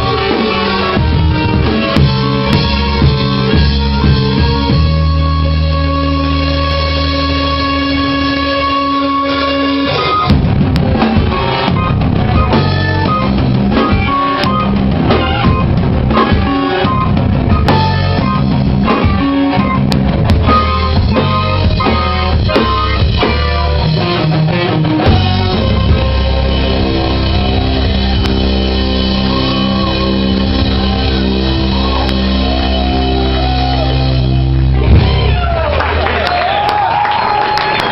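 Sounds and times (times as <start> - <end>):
bass guitar: 0.0 - 37.9
drum kit: 0.0 - 37.9
electric guitar: 0.0 - 37.9.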